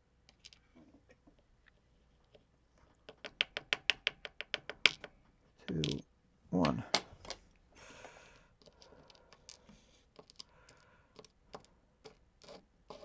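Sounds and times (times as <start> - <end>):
lock pins clicking and scratching: 8.6 - 13.0.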